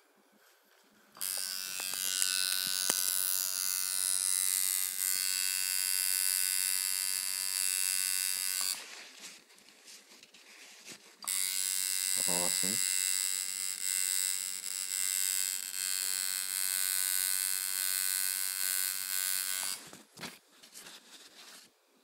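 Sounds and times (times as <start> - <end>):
tattoo machine buzzing: 1.2 - 8.8, 11.2 - 19.9.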